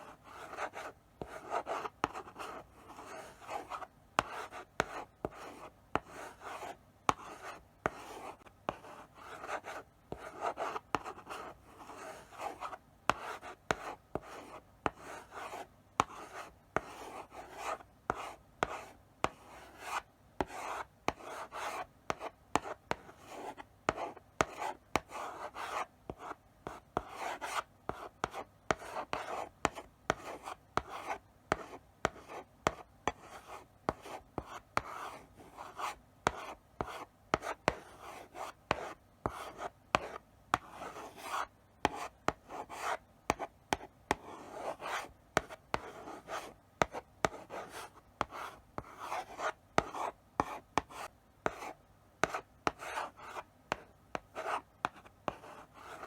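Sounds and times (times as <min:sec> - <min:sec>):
chalk tapping on board: 0:12.4 - 0:35.0, 0:35.7 - 0:37.8, 0:38.4 - 0:56.0.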